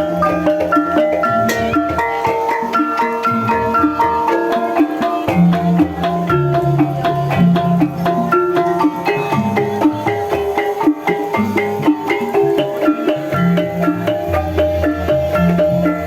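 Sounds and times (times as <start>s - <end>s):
drum strokes: 0.0s - 16.0s
gamelan keyed instruments: 0.0s - 16.0s.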